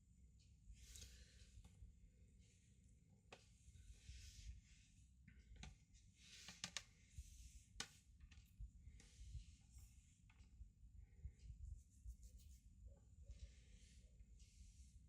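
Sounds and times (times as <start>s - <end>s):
soft rustles of plastic parts: 0.4s - 15.0s.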